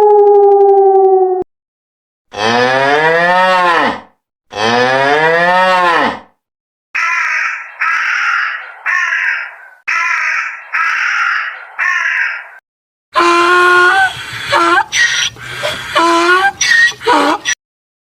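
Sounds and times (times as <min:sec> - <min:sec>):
harsh cawing calls: 0:07.0 - 0:12.6.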